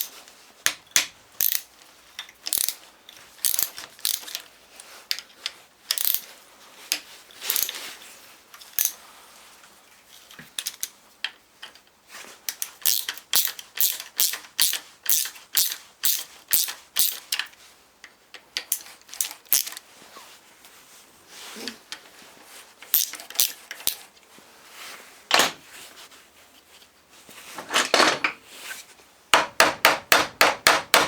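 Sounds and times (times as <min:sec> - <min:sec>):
hand ratchet clicking: 0:00.7 - 0:02.8, 0:03.4 - 0:04.5, 0:05.9 - 0:06.2, 0:07.5 - 0:07.8, 0:08.7 - 0:09.0, 0:12.5 - 0:17.5, 0:18.6 - 0:19.8, 0:22.8 - 0:24.0.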